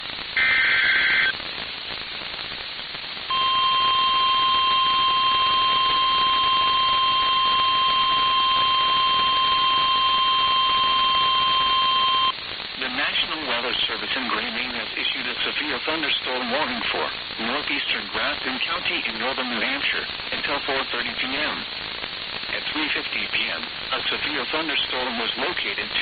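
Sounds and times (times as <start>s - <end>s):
radio static hiss: 0.0s - 26.0s
single-pitch alarm tone: 3.3s - 12.3s.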